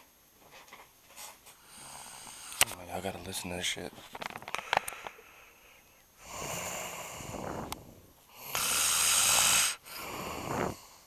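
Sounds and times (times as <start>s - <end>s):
man snoring loudly: 1.7s - 2.6s, 6.2s - 11.0s.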